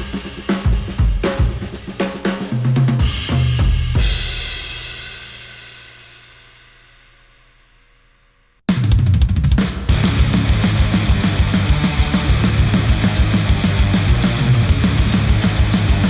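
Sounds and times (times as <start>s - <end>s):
heavy rock music through headphones: 9.8s - 16.0s.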